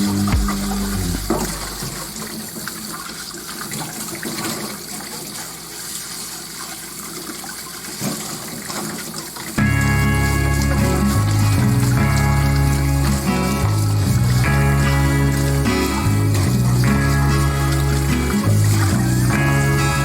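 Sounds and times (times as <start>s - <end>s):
background music: 0.0s - 2.3s, 9.6s - 20.0s
running water: 0.0s - 20.0s.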